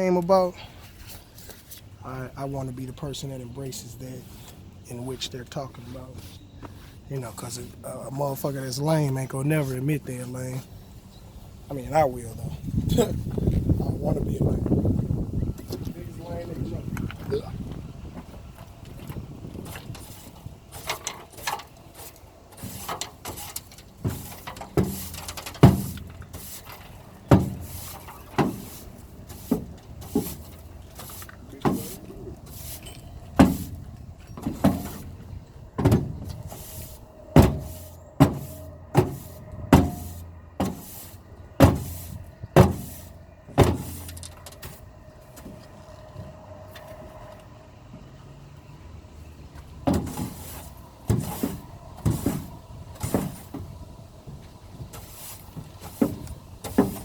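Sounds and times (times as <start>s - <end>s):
sharp knocks and bangs: 22.6s - 26.7s, 27.3s - 32.0s, 33.3s - 33.8s, 34.4s - 35.2s, 35.8s - 44.8s, 49.8s - 53.7s, 55.6s - 57.0s.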